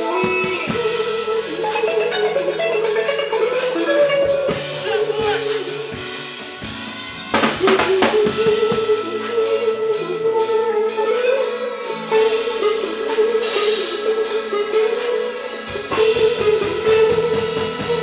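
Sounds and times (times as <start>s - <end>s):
drum kit beat: 0.0s - 18.0s
live band playing instrumental: 0.0s - 18.0s
quick run of drum hits: 4.4s - 8.9s.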